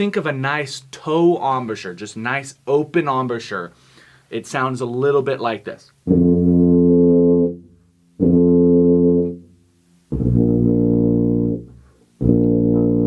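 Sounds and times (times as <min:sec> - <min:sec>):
tuba sustained notes: 0:06.1 - 0:13.0.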